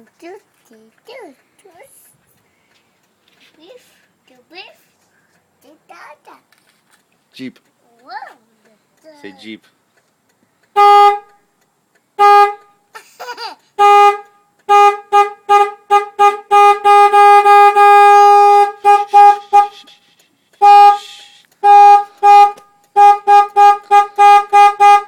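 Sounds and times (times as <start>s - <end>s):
car horn beeping: 10.7s - 11.5s, 12.2s - 12.9s, 13.8s - 20.0s, 20.6s - 25.0s.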